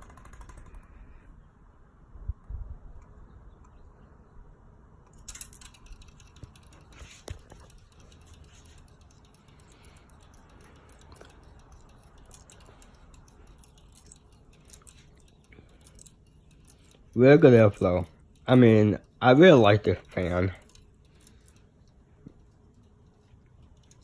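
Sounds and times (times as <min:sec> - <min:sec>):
ceiling fan coasting down: 0:05.0 - 0:24.0
light clicks and ticks: 0:05.0 - 0:24.0.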